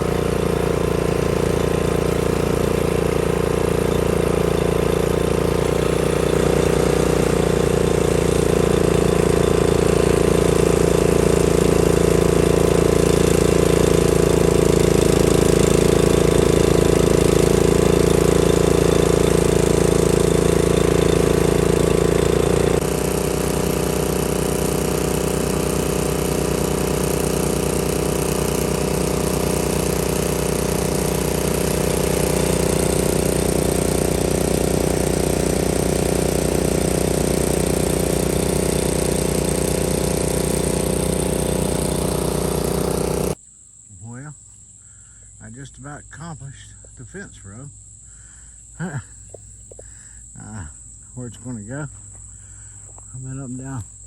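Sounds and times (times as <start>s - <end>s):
gasoline engine running: 0.0s - 44.3s, 44.9s - 54.0s.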